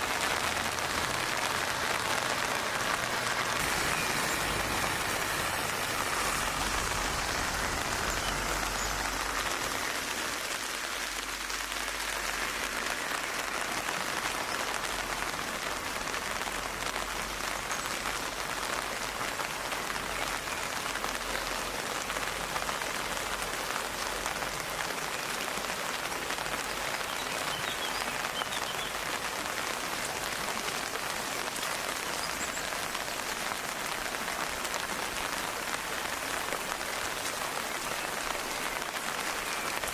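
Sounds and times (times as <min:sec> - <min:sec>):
rain pattering on a surface: 0:00.0 - 0:39.9.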